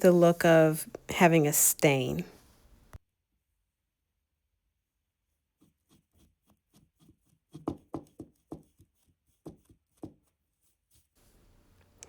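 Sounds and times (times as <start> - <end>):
paintbrush tapping on wood: 7.5 - 10.2.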